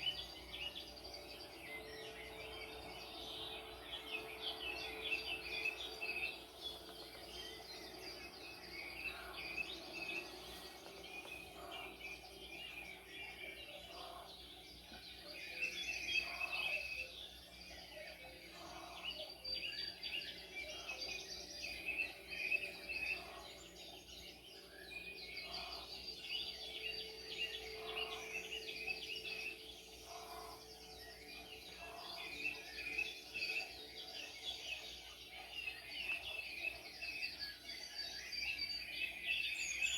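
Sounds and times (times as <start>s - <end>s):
songbirds chirping and singing: 0.0s - 39.9s.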